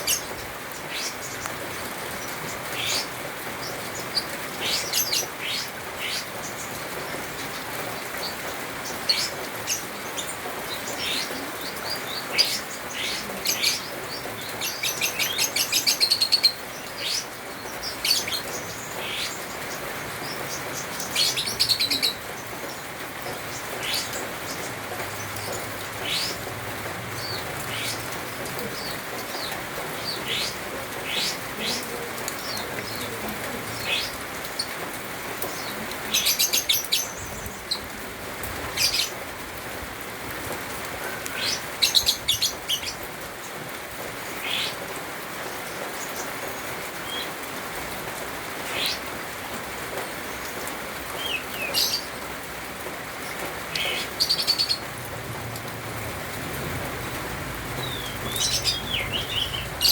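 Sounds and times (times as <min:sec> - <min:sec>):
bird rapid chattering: 0:57.8 - 0:59.9.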